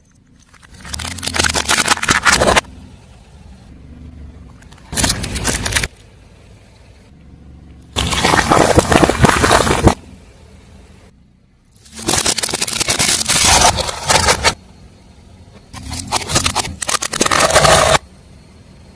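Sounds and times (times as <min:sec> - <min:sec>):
faint low engine hum: 0:00.0 - 0:18.9
tyre crushing crunchy objects: 0:00.6 - 0:02.7, 0:08.0 - 0:10.0, 0:11.9 - 0:14.6, 0:15.8 - 0:18.0.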